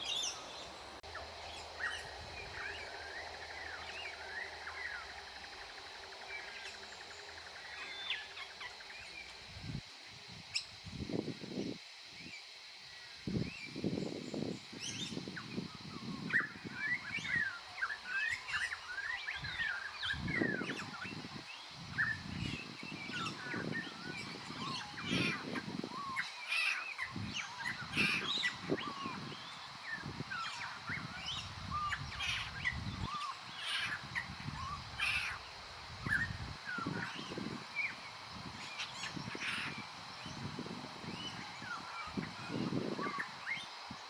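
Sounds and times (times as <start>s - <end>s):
birds chirping and whistling: 14.3s - 43.7s.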